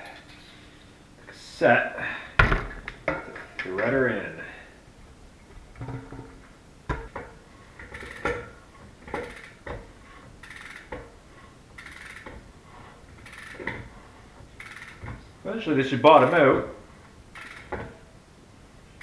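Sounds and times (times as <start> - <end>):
metallic clinks of bike parts: 6.9 - 11.1, 11.7 - 12.4, 13.1 - 13.9, 14.6 - 15.2, 17.3 - 18.0.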